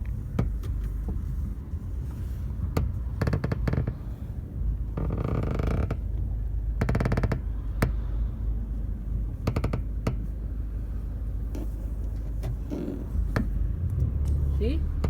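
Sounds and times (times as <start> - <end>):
low rumble of moving car: 0.0 - 15.0
car seat backs creaking: 2.7 - 4.1, 9.3 - 10.4, 11.3 - 14.2.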